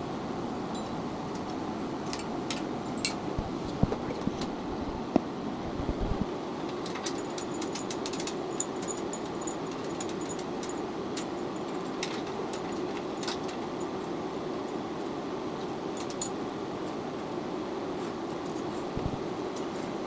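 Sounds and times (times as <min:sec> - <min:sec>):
steady hum: 0:00.0 - 0:20.0
small hardware clinking: 0:06.6 - 0:13.9, 0:16.0 - 0:16.4.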